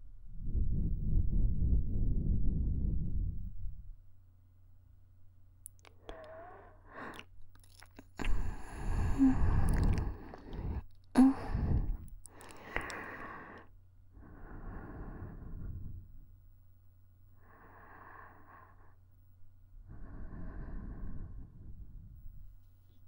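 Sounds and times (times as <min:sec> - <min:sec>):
faint steady hum: 0:00.0 - 0:23.0
woman breathing: 0:05.9 - 0:07.3, 0:08.2 - 0:16.4, 0:17.4 - 0:19.1, 0:19.8 - 0:22.6.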